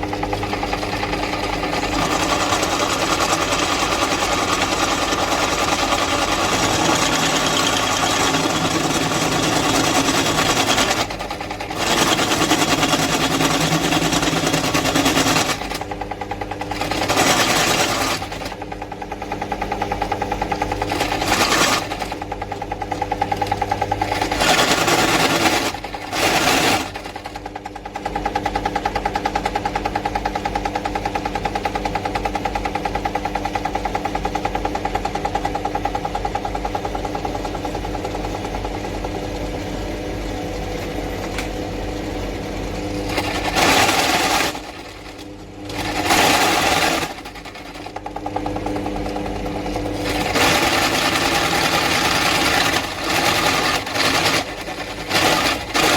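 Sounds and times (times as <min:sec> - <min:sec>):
drill press motor humming: 0:00.0 - 0:55.9.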